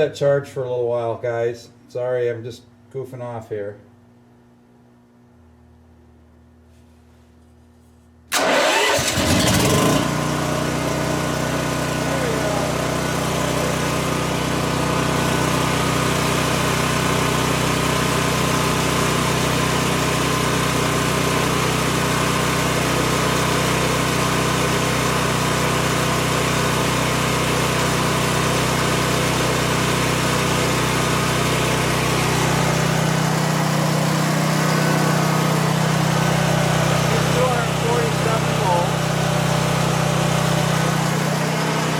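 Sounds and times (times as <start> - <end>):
generator engine cranking: 8.3 - 41.9
generator engine running: 8.3 - 41.9.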